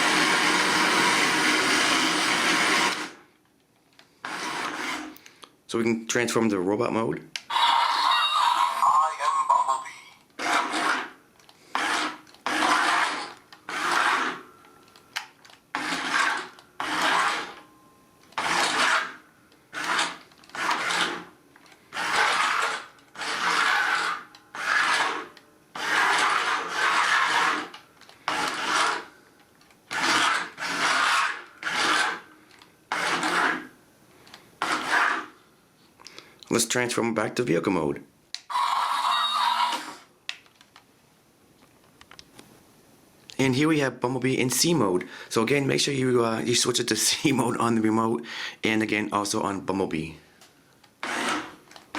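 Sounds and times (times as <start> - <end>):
toy motor and gears whirring: 10.4 - 14.4, 15.7 - 17.6, 18.4 - 21.3, 21.9 - 29.1, 29.9 - 32.2, 32.9 - 33.7, 34.6 - 35.3, 38.5 - 40.1, 51.0 - 51.9.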